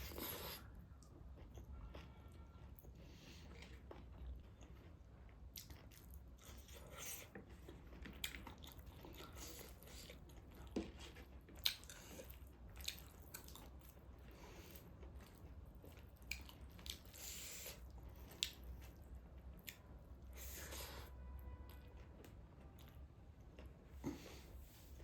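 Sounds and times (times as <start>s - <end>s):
person chewing with wet smacks: 0.0s - 21.1s.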